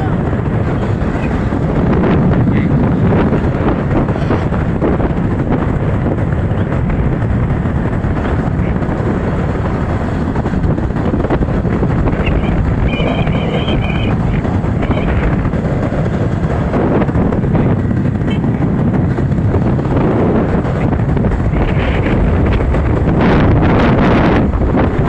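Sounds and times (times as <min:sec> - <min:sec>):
motorcycle engine: 0:00.0 - 0:25.0
wind buffeting microphone: 0:00.0 - 0:25.0
high-pitched tone: 0:12.1 - 0:15.2.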